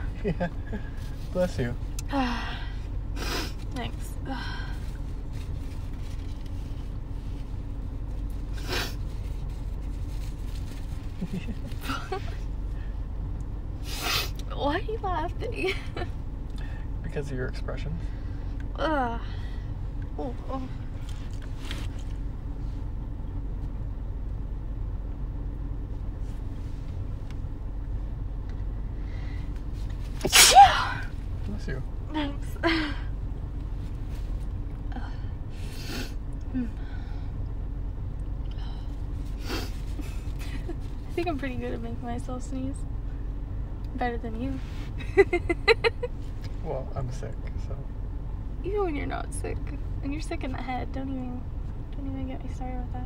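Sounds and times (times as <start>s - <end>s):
car engine idling: 0.0s - 53.0s
faint steady hum: 0.0s - 53.0s
sharp intake of breath: 13.8s - 14.4s, 35.5s - 36.2s.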